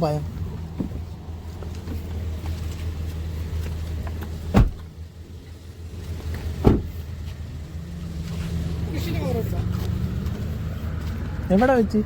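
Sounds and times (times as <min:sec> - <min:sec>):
car engine humming: 0:00.0 - 0:12.0
heavy thump: 0:04.5 - 0:04.9, 0:06.6 - 0:07.0.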